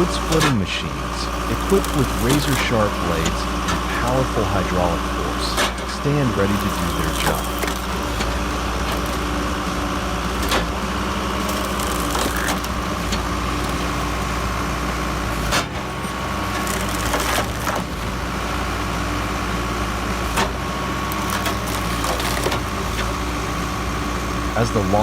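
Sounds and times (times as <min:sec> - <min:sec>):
wood-splitting machine running: 0:00.0 - 0:25.0
logs cracking apart: 0:06.6 - 0:18.6, 0:20.2 - 0:23.3.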